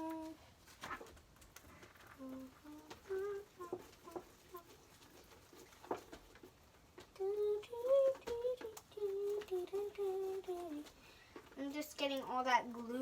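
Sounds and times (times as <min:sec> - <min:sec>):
girl humming: 0:00.0 - 0:00.4, 0:02.2 - 0:04.6, 0:07.2 - 0:10.9.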